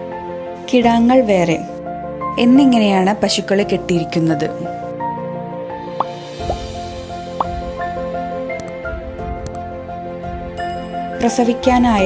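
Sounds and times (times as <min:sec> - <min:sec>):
soft instrumental music: 0:00.0 - 0:12.0.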